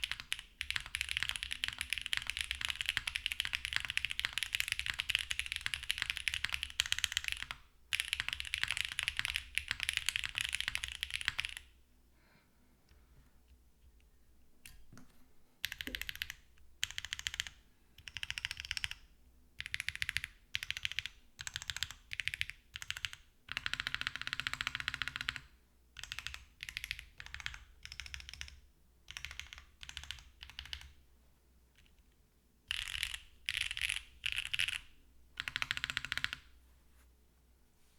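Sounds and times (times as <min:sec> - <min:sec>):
mechanical keyboard typing: 0:00.0 - 0:11.7, 0:15.6 - 0:19.0, 0:19.6 - 0:30.9, 0:32.7 - 0:36.5.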